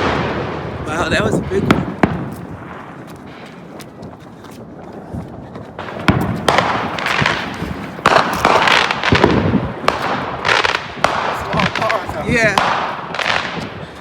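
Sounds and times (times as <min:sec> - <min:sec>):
fireworks bangs: 0:00.0 - 0:03.7, 0:05.8 - 0:14.0
fireworks crackling: 0:00.0 - 0:04.7, 0:05.7 - 0:14.0
faint distant firework pops: 0:05.8 - 0:13.8.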